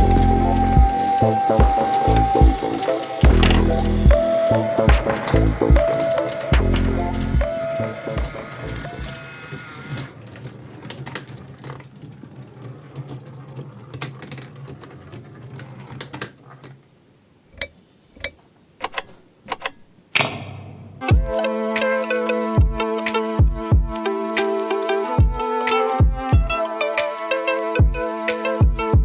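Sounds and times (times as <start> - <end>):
small electric motor humming: 0.0 - 10.2
marbles rattling on wooden run: 10.2 - 16.6.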